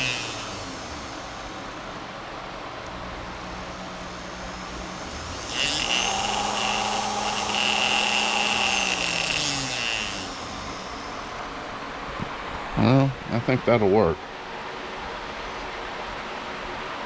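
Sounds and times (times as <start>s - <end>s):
electric motor whine: 0.0s - 2.2s, 2.9s - 11.6s
low steady hum: 0.0s - 17.0s.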